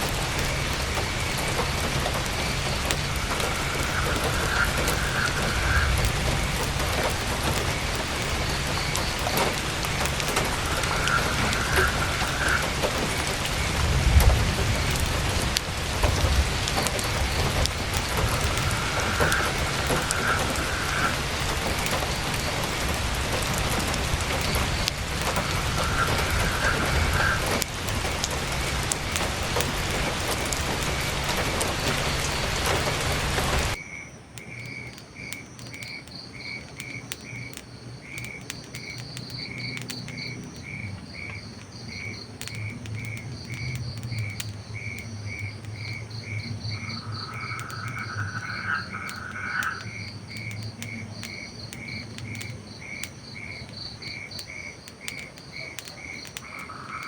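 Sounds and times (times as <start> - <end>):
faint clicks: 0.0 - 33.8, 34.4 - 57.0
heavy rain: 0.0 - 33.8, 35.2 - 57.0
crickets chirping: 0.0 - 57.0
frog trilling: 2.7 - 13.7, 16.8 - 22.3, 24.4 - 27.7, 39.4 - 52.0, 55.6 - 57.0.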